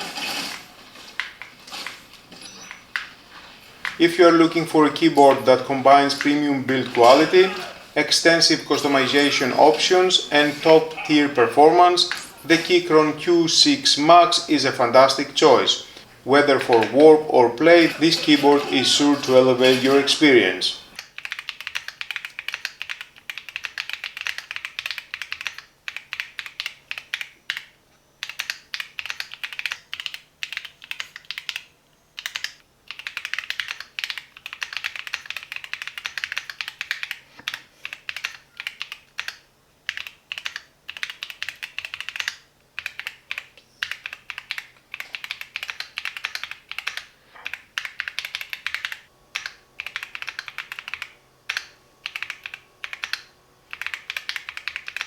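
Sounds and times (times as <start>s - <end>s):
mechanical keyboard typing: 3.8s - 55.0s.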